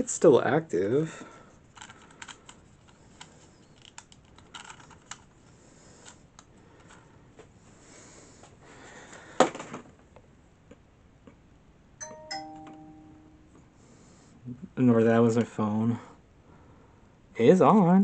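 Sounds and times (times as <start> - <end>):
phone notification chime: 12.0 - 13.6.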